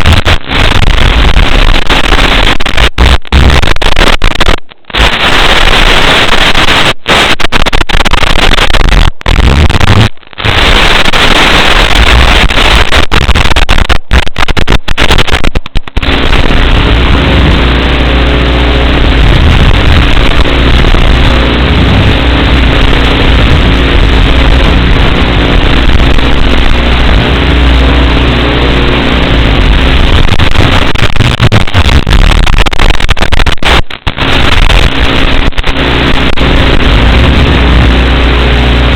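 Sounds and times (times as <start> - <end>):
loud harsh static hiss: 0.0 - 38.9
low buzz: 15.9 - 38.9.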